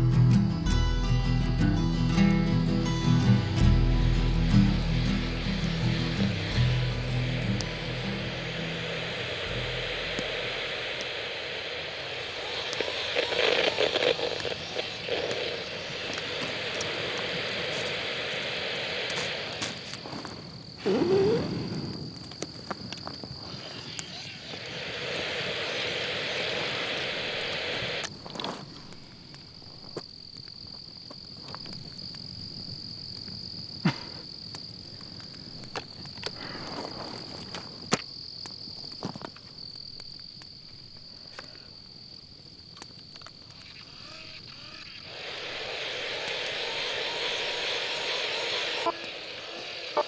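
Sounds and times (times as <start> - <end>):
hissing wash: 0.0 - 28.1, 43.5 - 50.0
crickets chirring: 0.0 - 50.0.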